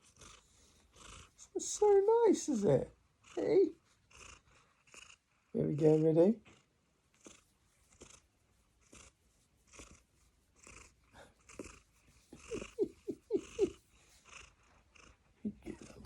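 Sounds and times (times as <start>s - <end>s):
cat breathing softly: 8.9s - 16.0s
cat whimpering squeaks: 11.6s - 13.8s.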